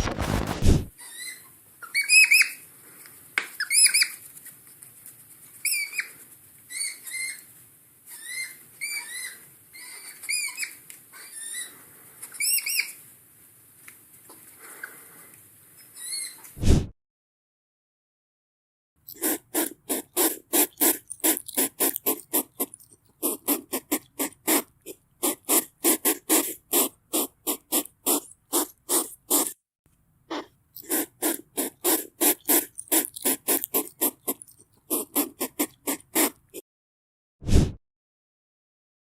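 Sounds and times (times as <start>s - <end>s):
hedgehog puffing: 0.0s - 0.9s, 19.1s - 29.6s, 30.3s - 36.6s.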